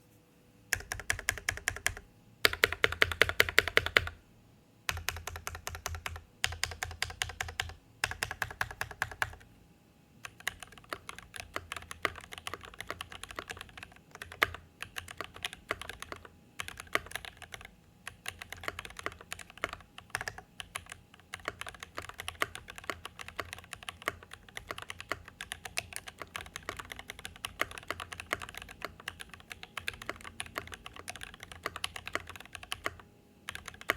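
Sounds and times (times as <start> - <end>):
mechanical keyboard typing: 0.7 - 4.2, 4.9 - 9.4, 10.2 - 33.9.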